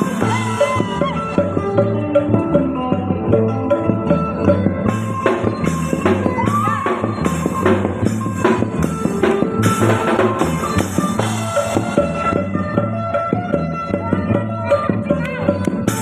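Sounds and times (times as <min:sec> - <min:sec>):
drum kit steady beat: 0:00.0 - 0:16.0
lute playing folk music: 0:00.0 - 0:16.0.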